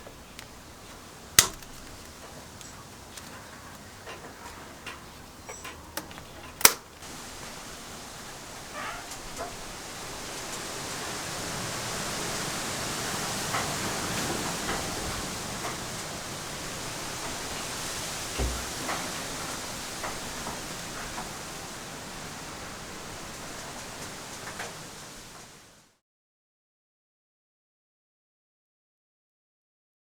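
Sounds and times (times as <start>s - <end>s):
steady hiss: 0.0s - 26.0s
light clicks: 4.9s - 7.0s.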